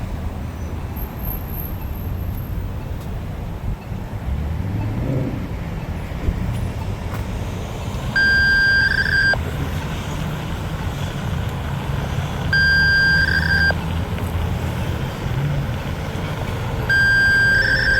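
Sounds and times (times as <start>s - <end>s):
continuous low rumble: 5.2s - 17.9s
high electronic beep: 8.2s - 9.4s, 12.6s - 13.8s, 16.9s - 17.9s.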